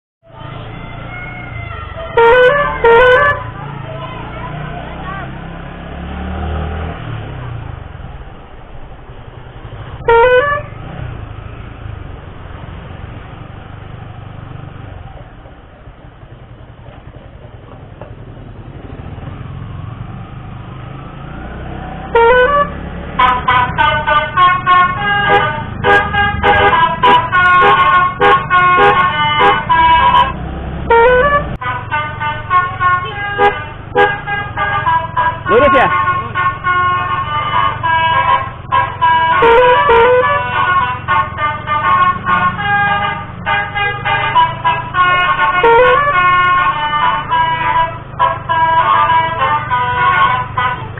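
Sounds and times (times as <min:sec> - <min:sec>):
engine rumble: 0:00.2 - 0:50.9
musical vehicle horn: 0:00.7 - 0:05.2, 0:09.9 - 0:11.2, 0:21.9 - 0:50.9.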